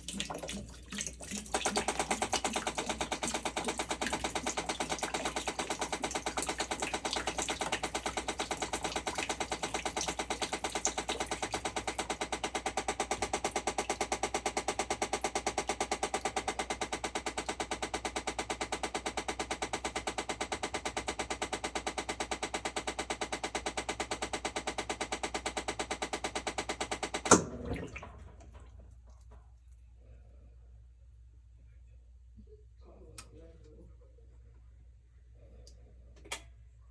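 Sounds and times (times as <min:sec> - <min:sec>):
washer fast clicking: 0:00.0 - 0:21.2.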